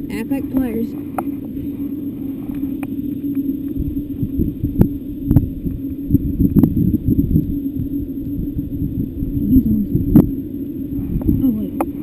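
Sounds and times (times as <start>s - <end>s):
muffled low thumps: 0.0s - 12.0s
steady low hum: 0.0s - 12.0s.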